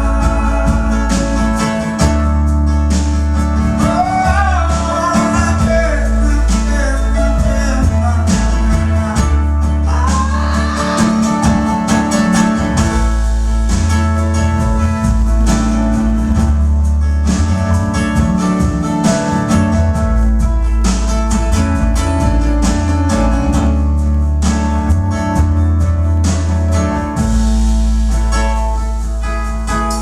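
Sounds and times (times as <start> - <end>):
person singing: 0.0 - 2.0, 3.8 - 12.4
deep bass line: 0.0 - 30.0
electric guitar: 0.0 - 30.0.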